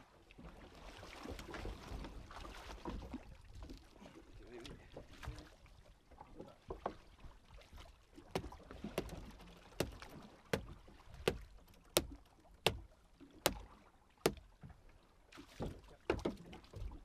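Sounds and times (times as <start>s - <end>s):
water and hull noise: 0.0s - 17.0s
fish knocking on boat: 8.3s - 12.9s, 13.5s - 13.7s, 14.3s - 14.7s, 15.6s - 17.0s.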